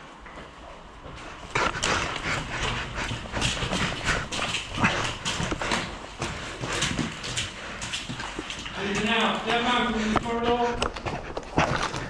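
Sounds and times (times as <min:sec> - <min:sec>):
footfalls of people running: 0:00.0 - 0:12.0.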